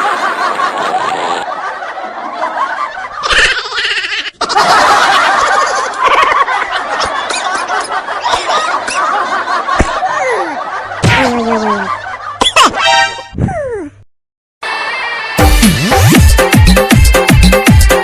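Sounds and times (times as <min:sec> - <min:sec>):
people laughing and snickering: 0:00.0 - 0:13.0.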